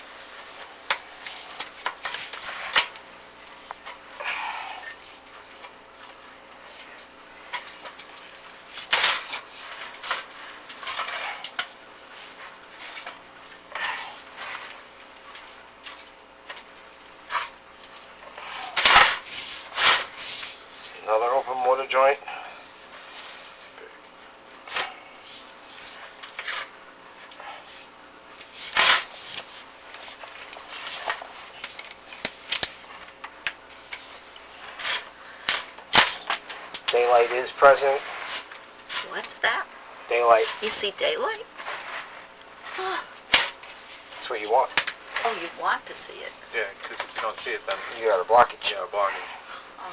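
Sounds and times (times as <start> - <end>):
cable scraping flue walls: 24.7 - 49.9.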